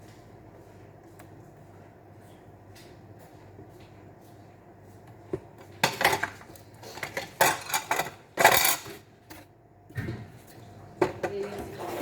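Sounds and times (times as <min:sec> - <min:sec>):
kitchenware clattering: 0:05.8 - 0:09.0.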